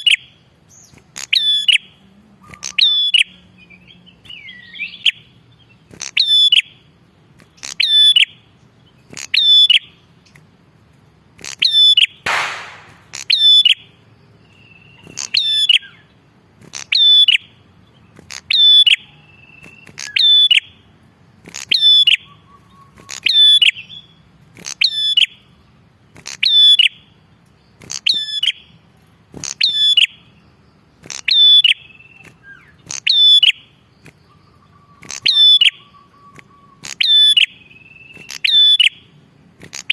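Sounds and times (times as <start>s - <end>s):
bird repeating sharp call: 11.4s - 13.8s
harsh noisy burst: 12.3s - 13.1s.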